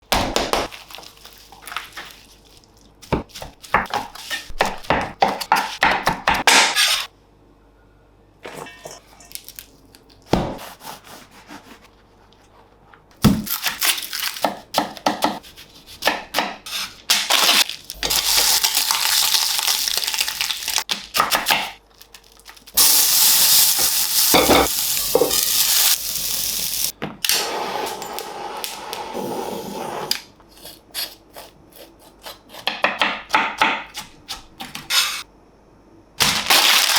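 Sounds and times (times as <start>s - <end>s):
food sizzling: 18.0s - 20.9s, 22.8s - 30.1s.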